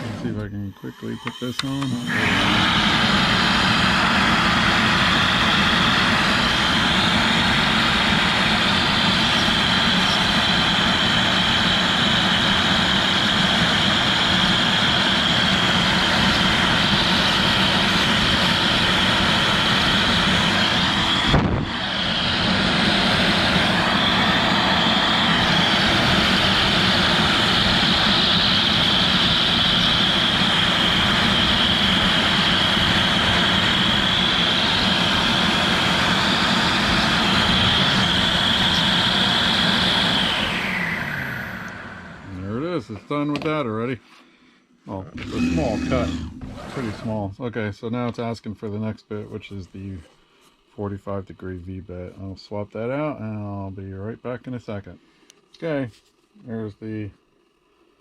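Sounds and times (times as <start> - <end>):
router spindle whining: 0.0 - 43.5, 45.1 - 47.3.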